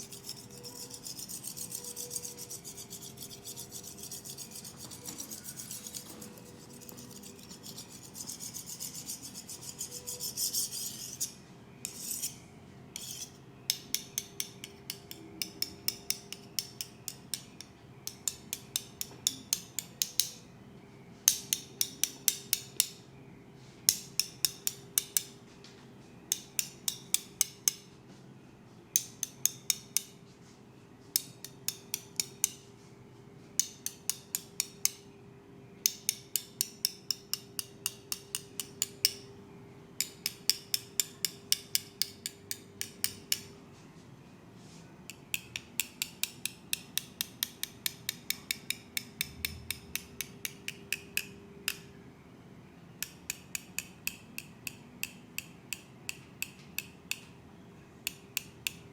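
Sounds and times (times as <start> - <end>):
steady rubbing: 0.0 - 12.4.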